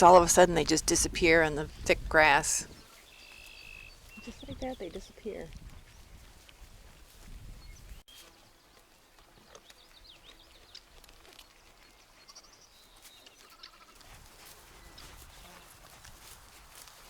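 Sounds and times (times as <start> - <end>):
small birds chirping: 2.6 - 16.4
downward-sweeping bird calls and trills: 2.7 - 5.1.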